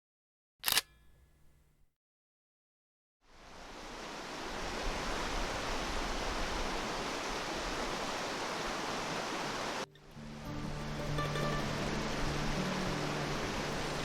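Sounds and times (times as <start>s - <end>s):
fast-flowing river rushing: 3.4s - 14.0s
music with sustained tones: 9.9s - 14.0s.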